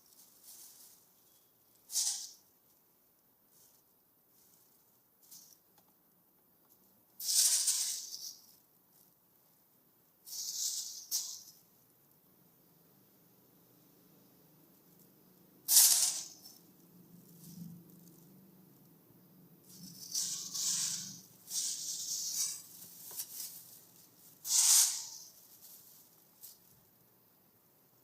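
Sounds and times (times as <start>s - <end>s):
plastic crinkling: 19.7s - 26.9s.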